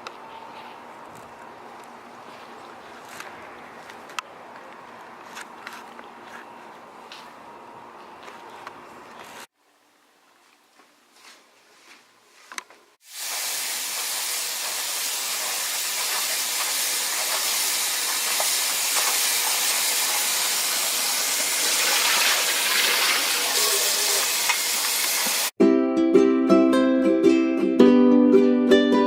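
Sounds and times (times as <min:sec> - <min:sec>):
food deep-frying in sizzling oil: 0:13.0 - 0:25.5.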